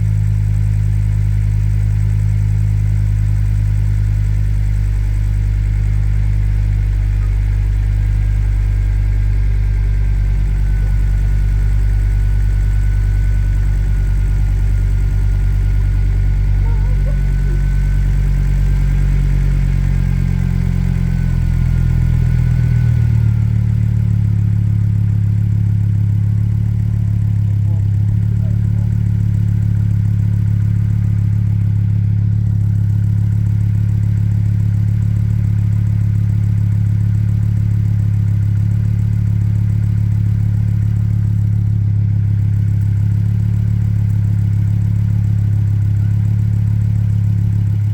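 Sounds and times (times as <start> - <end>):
car engine idling: 0.0 - 47.9.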